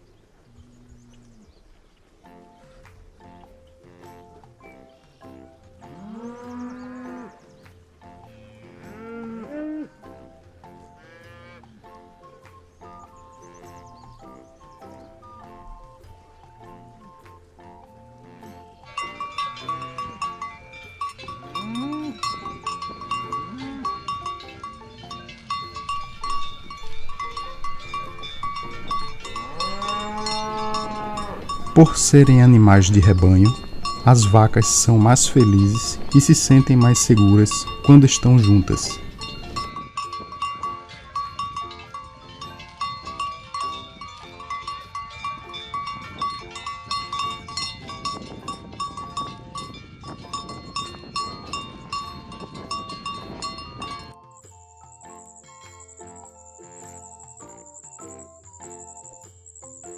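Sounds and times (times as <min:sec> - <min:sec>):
cowbells clanking: 0:18.9 - 0:54.2
cattle lowing: 0:26.0 - 0:39.7.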